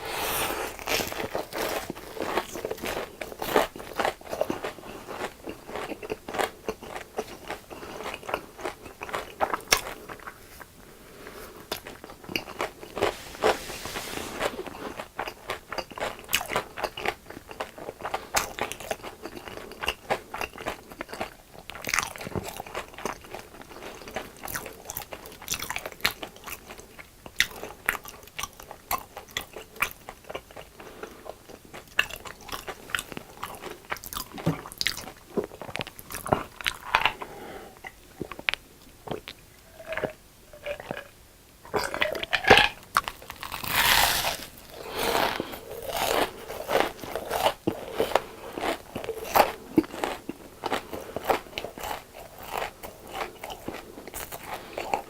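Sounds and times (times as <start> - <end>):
chewing crunchy fried food: 0.6 - 13.6, 14.4 - 55.0
brief hiss: 13.0 - 14.9.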